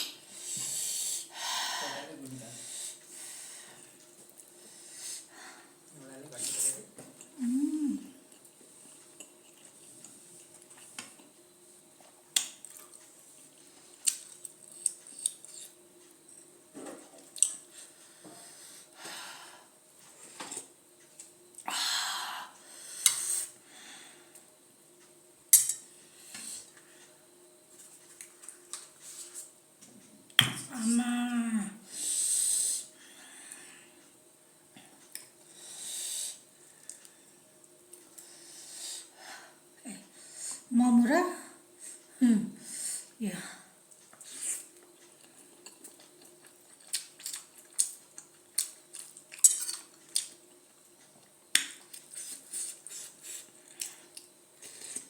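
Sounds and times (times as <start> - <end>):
cutlery clinking against dishes: 25.6 - 25.9.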